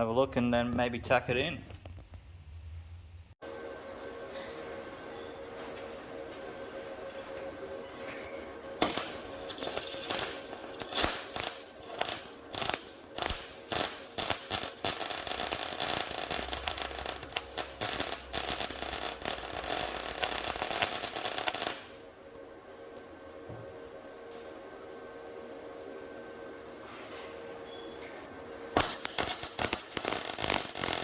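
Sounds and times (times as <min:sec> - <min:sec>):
welder welding: 0:08.6 - 0:22.0, 0:28.0 - 0:31.0.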